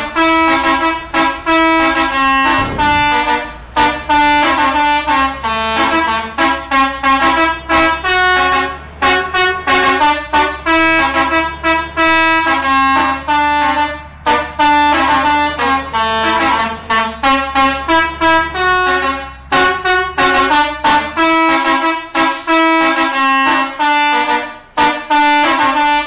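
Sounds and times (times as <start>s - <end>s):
multi-tone bus air horn melody: 0.0s - 26.0s.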